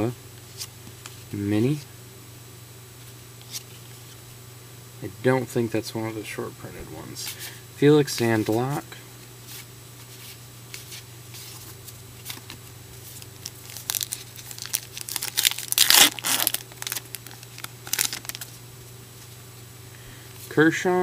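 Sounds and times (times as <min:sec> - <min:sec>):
foil wrapper tearing and crinkling: 0:13.1 - 0:18.6.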